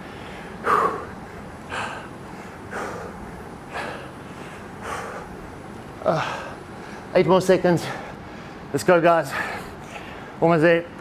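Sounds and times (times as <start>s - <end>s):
man breathing out hard: 0.0s - 5.4s.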